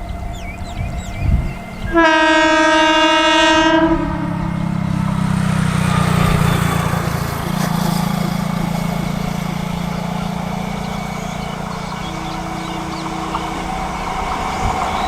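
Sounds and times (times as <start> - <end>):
train running with low hum: 0.0 - 15.0
train horn blast: 1.7 - 5.6, 11.1 - 14.4.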